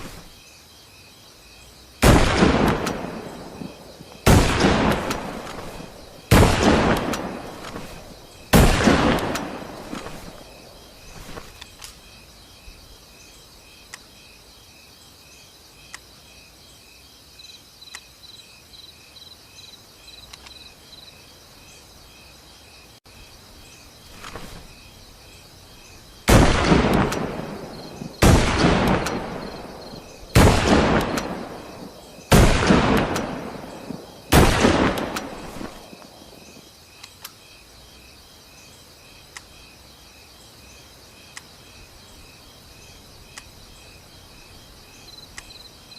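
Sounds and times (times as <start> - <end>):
rifle shots echoing: 2.0 - 10.5, 26.3 - 36.5.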